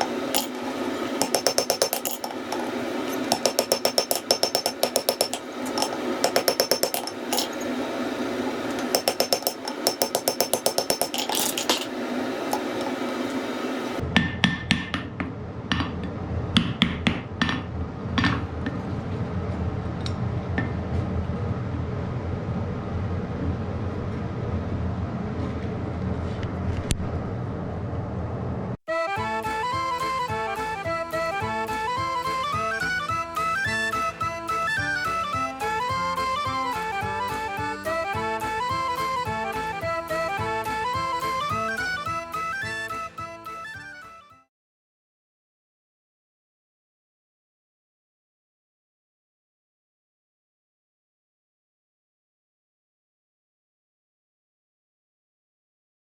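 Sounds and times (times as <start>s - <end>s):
hammer striking hot iron: 1.2s - 7.7s, 8.8s - 13.0s, 14.0s - 16.0s, 16.6s - 18.5s
steady low noise: 15.0s - 28.8s.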